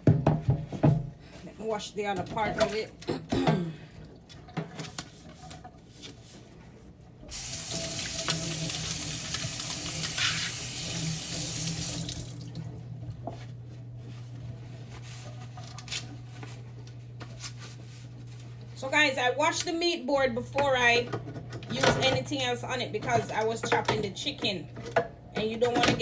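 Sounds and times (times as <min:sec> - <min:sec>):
tap running into sink: 0:07.3 - 0:12.6.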